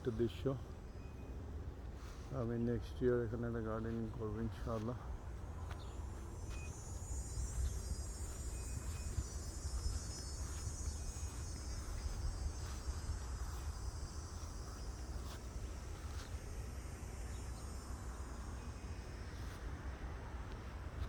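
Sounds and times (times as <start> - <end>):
insects chorus: 0.0 - 21.0.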